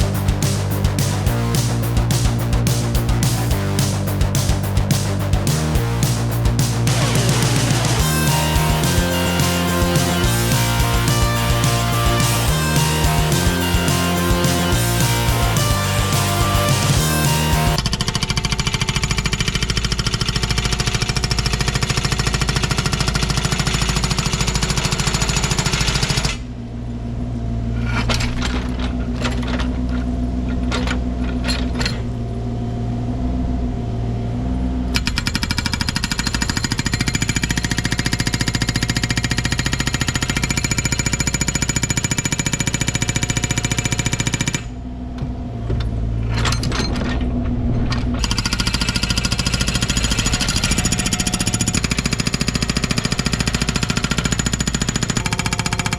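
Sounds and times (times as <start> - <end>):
excavator engine running: 0.0 - 18.0.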